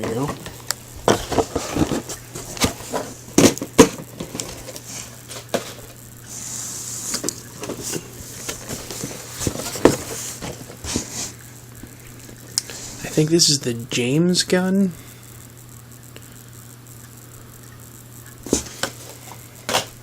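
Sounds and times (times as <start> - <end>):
cardboard sliding rustle: 0.0 - 11.6, 18.4 - 20.0
faint steady low hum: 0.0 - 20.0
cardboard boxes knocking and tapping: 7.2 - 11.1, 18.4 - 19.0.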